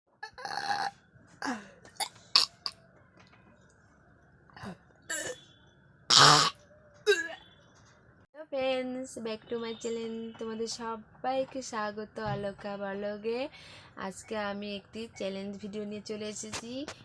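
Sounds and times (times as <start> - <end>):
person coughing: 7.1 - 7.4.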